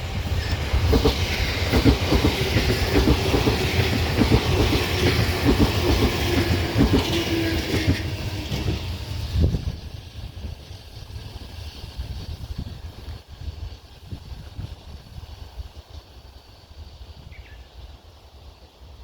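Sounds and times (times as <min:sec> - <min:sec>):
train low rumble: 0:00.0 - 0:19.0
train wheels clacking over joints: 0:00.2 - 0:09.7.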